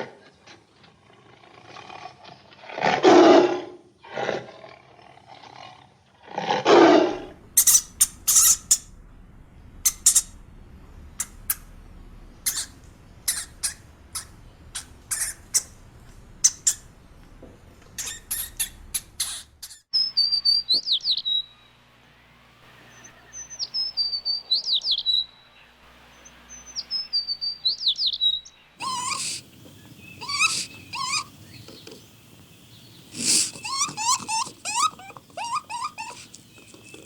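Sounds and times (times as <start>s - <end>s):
bird chirps and calls: 12.4s - 15.8s, 22.9s - 25.3s, 26.2s - 37.0s
bird whistling with trill: 19.9s - 21.6s, 22.9s - 25.3s, 26.5s - 32.0s, 32.8s - 37.0s.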